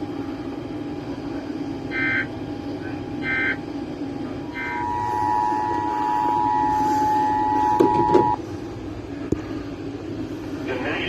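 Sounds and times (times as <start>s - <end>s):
low steady hum: 0.0s - 11.0s
two-tone attention signal: 4.5s - 8.4s.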